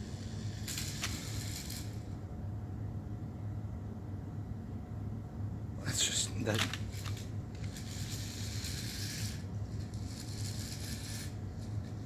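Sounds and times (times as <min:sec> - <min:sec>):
toy truck motor hum: 0:00.0 - 0:02.1, 0:06.9 - 0:12.0.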